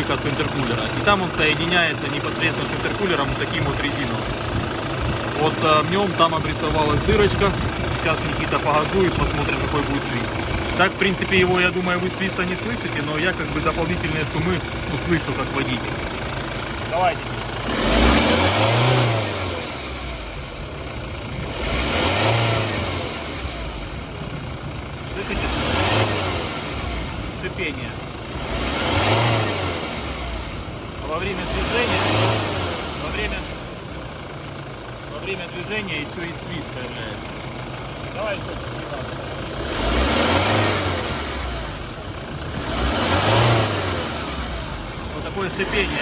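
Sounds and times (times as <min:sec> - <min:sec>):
diesel engine revving: 0:00.0 - 0:46.0.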